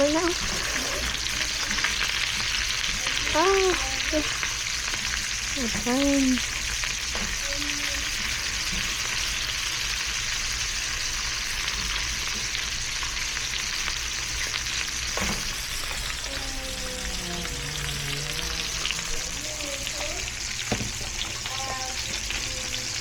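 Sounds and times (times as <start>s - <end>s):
meat sizzling in a pan: 0.0s - 23.0s
person talking: 5.6s - 6.4s, 16.2s - 20.3s
knock on pan: 20.7s - 21.2s.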